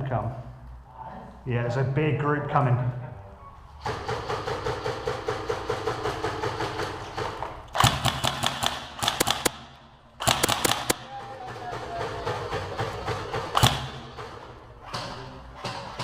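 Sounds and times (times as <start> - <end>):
rapid automatic airsoft fire: 7.7 - 11.1, 12.0 - 14.4
sharp airsoft shots close by: 7.7 - 11.1, 13.5 - 14.1.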